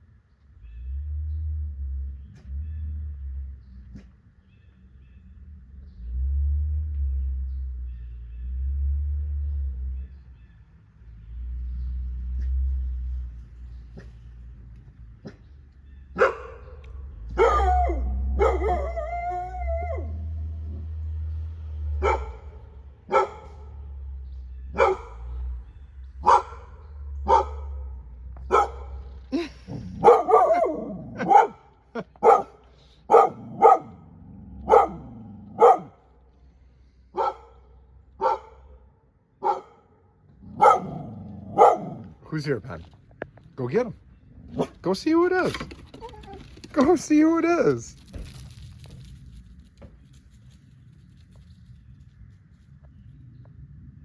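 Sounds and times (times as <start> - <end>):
low rumble: 11.2 - 33.1
dog barking: 16.1 - 20.1, 22.0 - 23.8, 24.7 - 25.4, 26.2 - 29.1, 29.9 - 36.1, 37.1 - 38.8, 39.4 - 42.2, 44.5 - 44.8.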